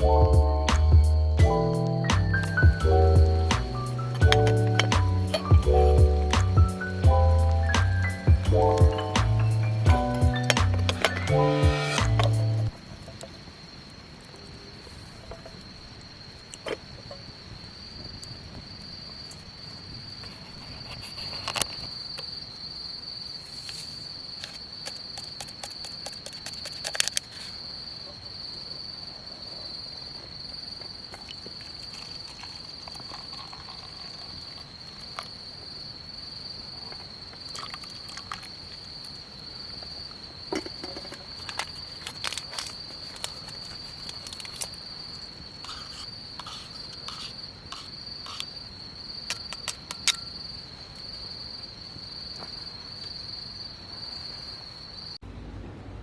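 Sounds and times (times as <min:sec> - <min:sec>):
cricket trilling: 0:00.0 - 0:55.2
sharp clicks and taps: 0:02.1 - 0:06.9.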